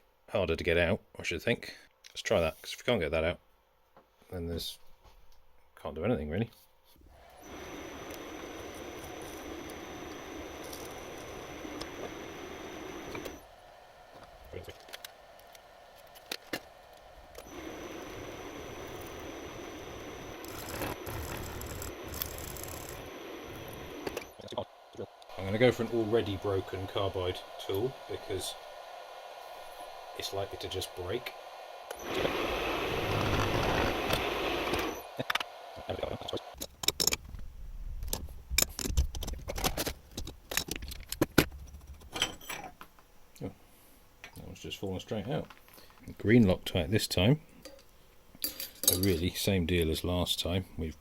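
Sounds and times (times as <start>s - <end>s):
machine motor whining: 7.1s - 36.6s
small metal parts clinking: 47.6s - 49.3s.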